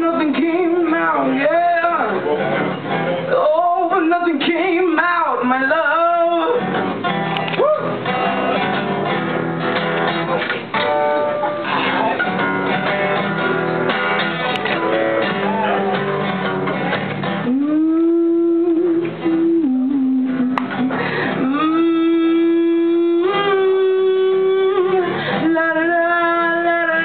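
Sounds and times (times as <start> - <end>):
acoustic guitar strumming chords: 0.0 - 27.0
person singing wordless notes: 17.4 - 27.0.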